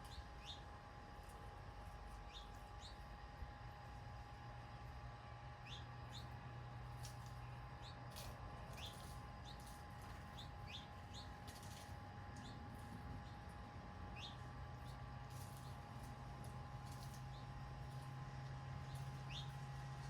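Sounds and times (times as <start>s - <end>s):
faint garden hum: 0.0s - 20.0s
birds chirping: 10.3s - 11.8s, 14.1s - 15.8s, 18.8s - 19.6s.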